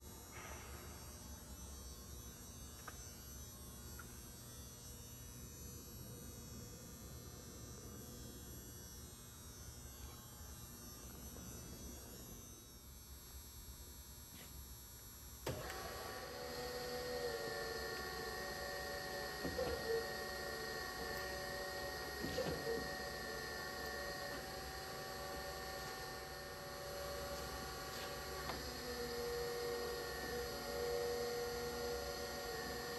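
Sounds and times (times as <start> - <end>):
low electrical hum: 0.0 - 32.9
grinder motor whine: 15.5 - 32.9.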